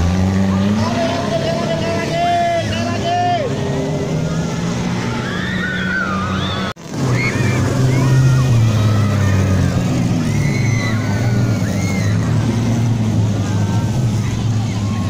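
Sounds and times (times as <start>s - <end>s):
people calling: 0.0s - 15.0s
vehicle engine running: 0.0s - 15.0s.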